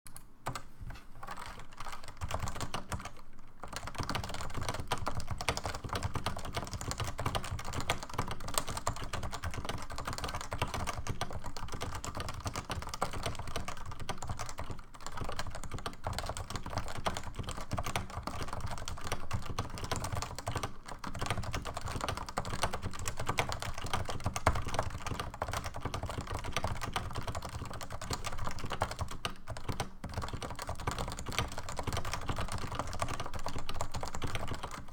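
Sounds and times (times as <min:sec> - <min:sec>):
typing on keyboard: 0:00.1 - 0:34.9.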